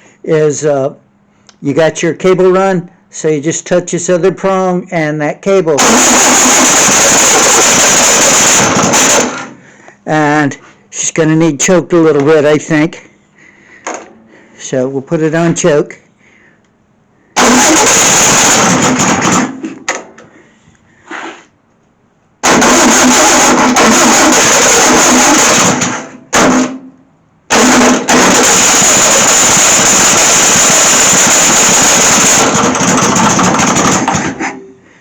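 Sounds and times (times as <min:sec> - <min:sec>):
starter motor cranking engine: 0:05.8 - 0:09.6, 0:17.4 - 0:19.7, 0:22.4 - 0:26.8, 0:27.5 - 0:34.6.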